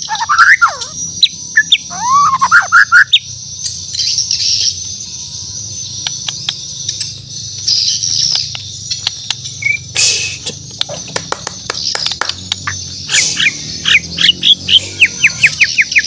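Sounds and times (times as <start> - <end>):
bird twittering song: 0.0 - 16.0
sharp ticks: 6.0 - 7.2, 8.1 - 13.0.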